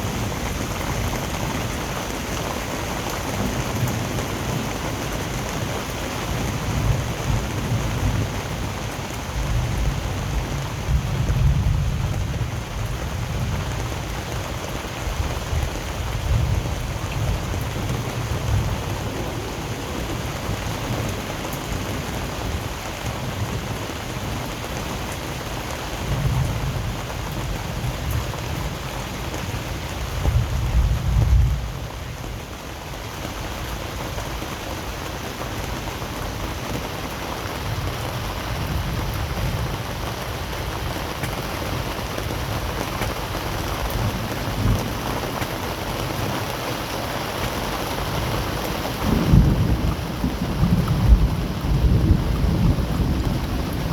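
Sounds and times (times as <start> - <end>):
steady rain: 0.0 - 53.9
thunder rumbling: 47.3 - 53.9.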